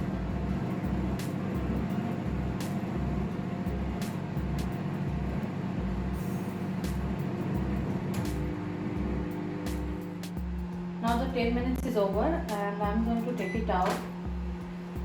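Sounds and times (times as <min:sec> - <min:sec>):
microwave oven humming: 0:00.0 - 0:15.0
oven clicks: 0:06.7 - 0:10.1, 0:13.7 - 0:14.2.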